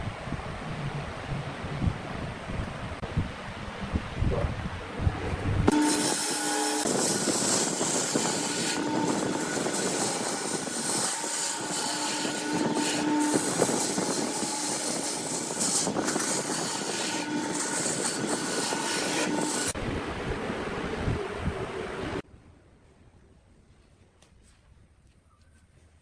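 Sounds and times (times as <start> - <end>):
wood lathe cutting wood: 5.7 - 19.8.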